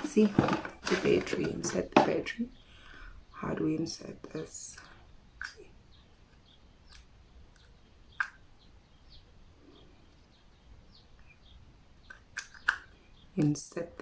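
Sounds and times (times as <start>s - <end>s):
faint bird chirps: 4.8s - 13.4s.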